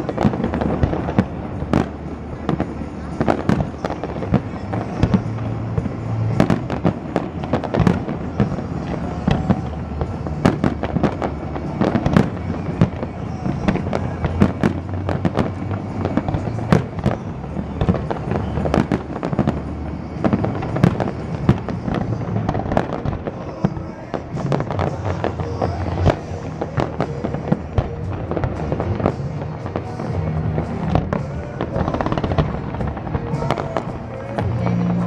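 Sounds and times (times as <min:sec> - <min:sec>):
fireworks bursting: 0:00.0 - 0:35.0
steady music soundtrack: 0:00.0 - 0:35.0.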